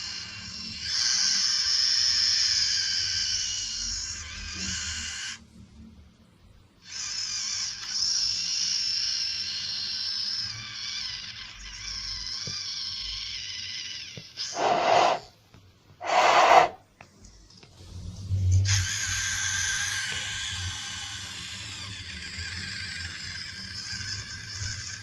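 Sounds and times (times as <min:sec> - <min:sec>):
short loud squeals: 0:14.4 - 0:15.3, 0:16.0 - 0:16.8.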